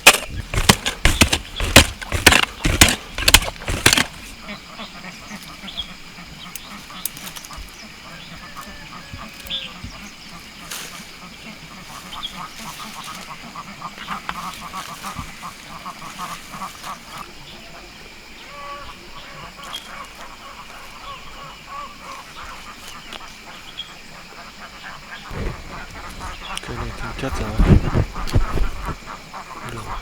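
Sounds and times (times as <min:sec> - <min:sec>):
ducks quacking: 0:18.6 - 0:30.0.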